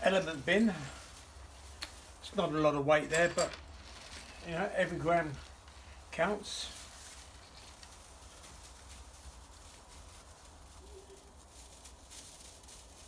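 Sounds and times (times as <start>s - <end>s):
light clicks of metal parts: 3.0s - 4.4s.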